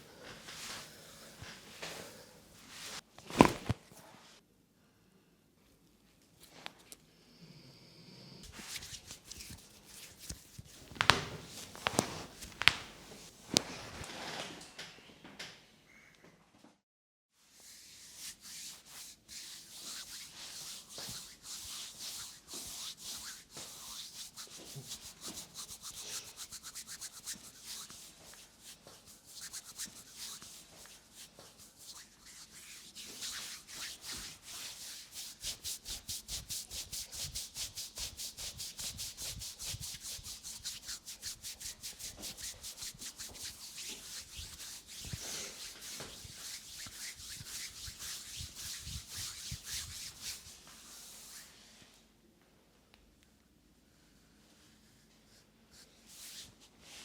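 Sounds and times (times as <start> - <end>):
hands rubbing over skin: 0.4 - 3.8, 8.5 - 14.1, 18.1 - 51.6
soft thuds: 10.8 - 13.9.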